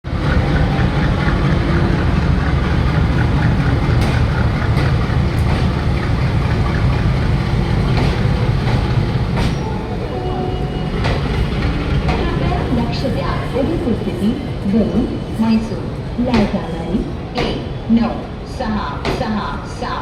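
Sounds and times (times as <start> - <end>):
train rumbling on track: 0.0 - 20.0
wheels clicking over rail joints: 0.1 - 9.6.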